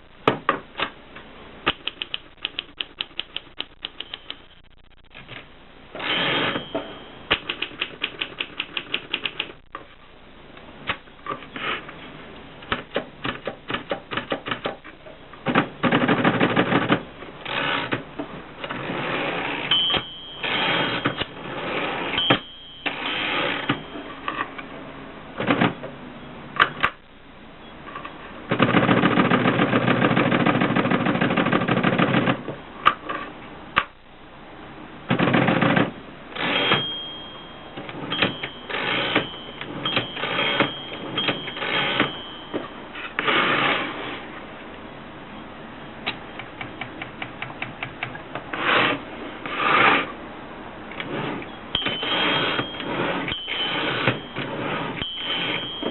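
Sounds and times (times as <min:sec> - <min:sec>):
typewriter mechanical rattling: 0:07.3 - 0:09.6.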